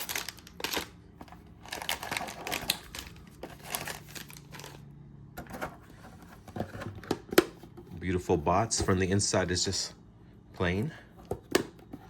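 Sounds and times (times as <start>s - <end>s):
card packs clicking and crinkling: 0.0s - 7.6s.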